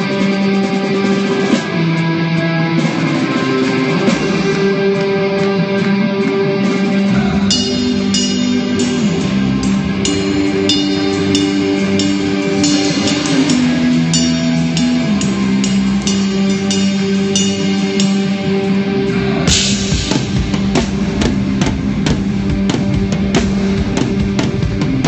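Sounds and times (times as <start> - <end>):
guitar chords: 0.0 - 25.0
drums with cymbal strikes: 6.7 - 25.0
bass line: 7.0 - 25.0.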